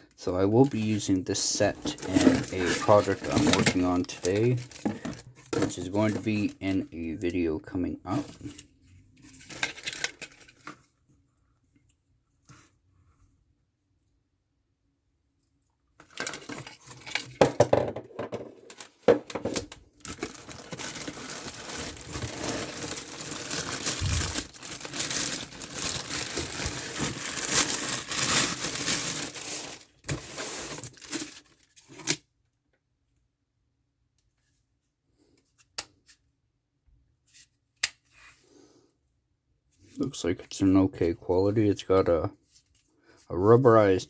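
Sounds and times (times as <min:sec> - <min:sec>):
packaging tearing and crinkling: 0:01.8 - 0:05.2, 0:16.1 - 0:17.2, 0:19.5 - 0:32.2
sharp rips of packaging: 0:20.1 - 0:31.4.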